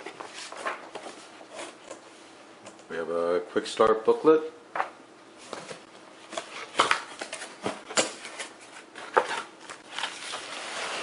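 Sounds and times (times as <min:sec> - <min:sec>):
cardboard rustling and scraping: 0:00.0 - 0:02.0, 0:05.4 - 0:11.0.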